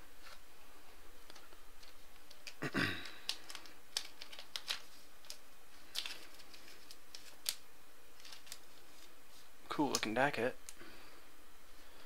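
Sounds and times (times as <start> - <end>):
cards clicking and tapping: 1.2 - 7.6.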